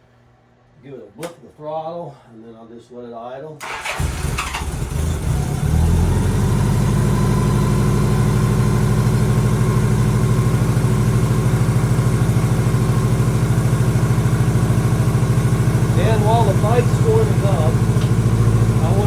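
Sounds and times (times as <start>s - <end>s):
motorcycle engine idling: 6.4s - 19.0s.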